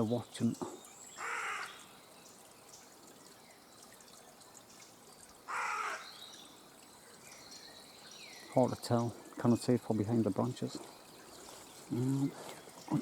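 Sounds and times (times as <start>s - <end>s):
crow cawing: 1.2s - 1.7s, 5.5s - 6.1s.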